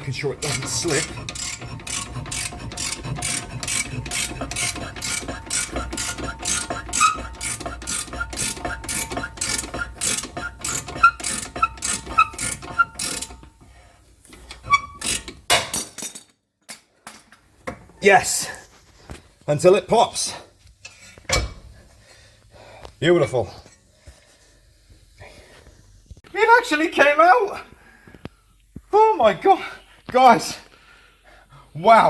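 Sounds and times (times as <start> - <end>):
ratchet clicking: 0.0 - 15.5.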